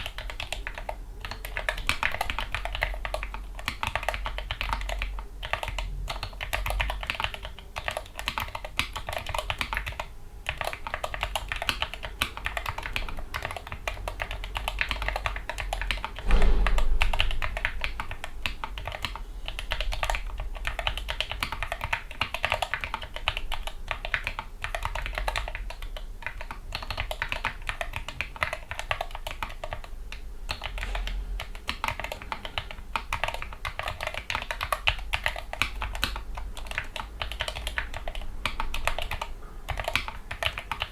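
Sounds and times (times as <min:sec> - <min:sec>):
fast keyboard typing: 0:00.0 - 0:40.9
low thump: 0:16.2 - 0:17.5.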